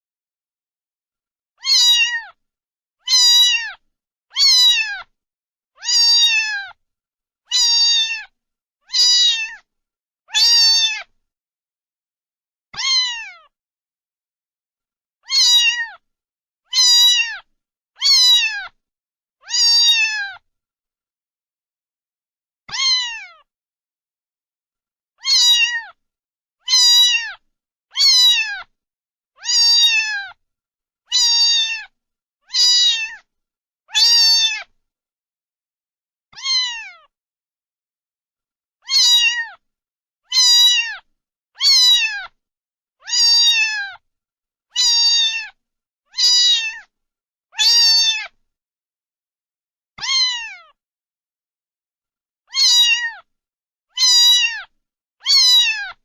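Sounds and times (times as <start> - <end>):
cat meowing: 1.6 - 2.4, 3.0 - 5.1, 5.8 - 6.8, 7.5 - 9.7, 10.3 - 11.1, 12.8 - 13.5, 15.2 - 16.0, 16.7 - 18.8, 19.4 - 20.4, 22.7 - 23.5, 25.2 - 26.0, 26.6 - 28.7, 29.4 - 30.4, 31.1 - 33.3, 33.9 - 34.7, 36.3 - 37.1, 38.8 - 39.6, 40.3 - 42.4, 43.0 - 44.0, 44.7 - 46.9, 47.6 - 48.4, 50.0 - 50.8, 52.5 - 53.3, 53.9 - 56.0.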